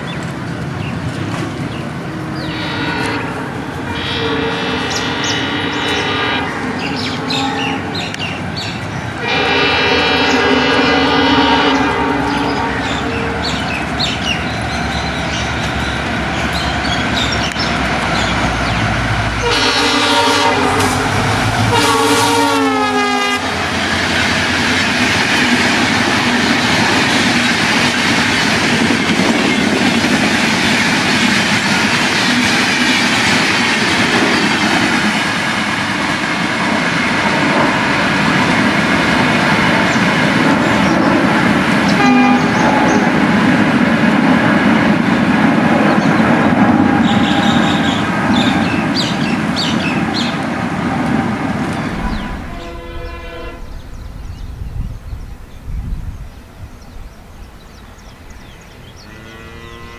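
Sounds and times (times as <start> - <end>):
diesel locomotive engine running: 0.0 - 54.4
train coaches rushing past: 0.0 - 55.6
multi-tone train horn blasts: 2.0 - 8.4, 9.1 - 14.1, 19.3 - 24.1, 41.8 - 43.4, 46.4 - 53.8, 59.1 - 59.9.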